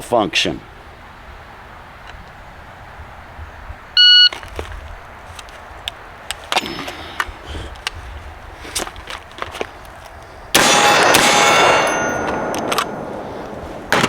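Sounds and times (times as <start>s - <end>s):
shot timer beep: 4.0s - 4.3s.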